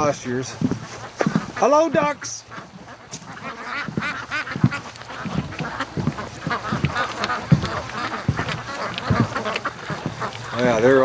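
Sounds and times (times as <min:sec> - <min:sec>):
ducks quacking: 0:00.0 - 0:11.0.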